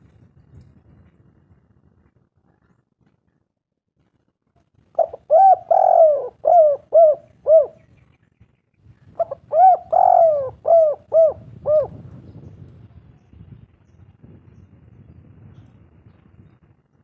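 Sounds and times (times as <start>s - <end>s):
dove cooing: 5.0s - 7.8s, 9.1s - 12.0s.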